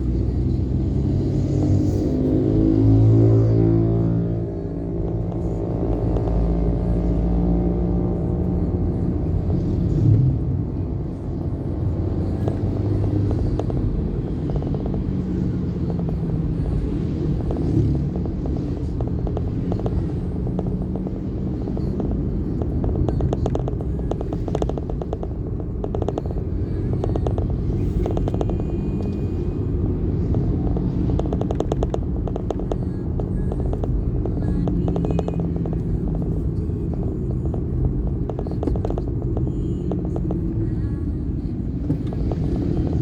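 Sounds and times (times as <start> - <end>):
vehicle engine and road rumble: 0.0 - 43.0
rapid small clicks and rattles: 12.2 - 29.4, 30.1 - 41.1.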